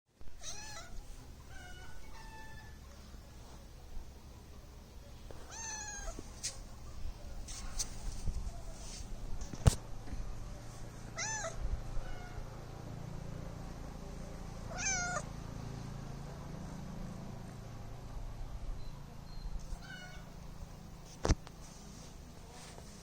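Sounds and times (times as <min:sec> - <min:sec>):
cat meowing: 0:00.4 - 0:02.8, 0:05.5 - 0:06.2, 0:11.2 - 0:12.4, 0:14.7 - 0:15.3, 0:19.8 - 0:20.4.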